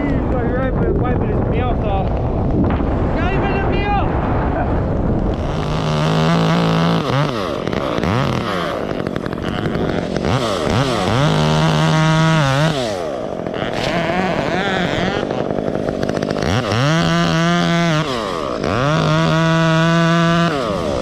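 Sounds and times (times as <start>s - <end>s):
chainsaw revving: 5.3s - 21.0s.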